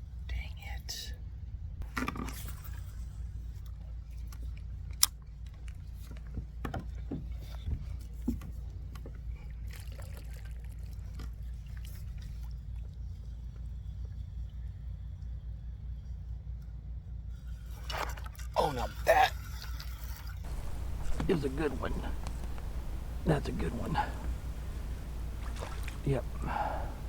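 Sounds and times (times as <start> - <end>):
steady low rumble: 20.5 - 27.0.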